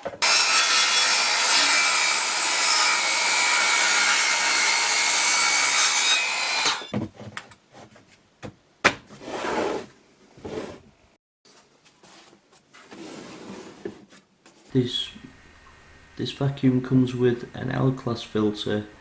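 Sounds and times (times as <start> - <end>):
circular saw cutting wood: 0.1 - 6.9.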